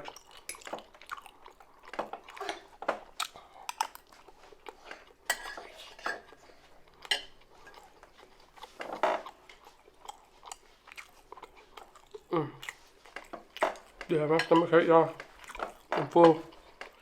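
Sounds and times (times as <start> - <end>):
chewing: 0.0 - 17.0.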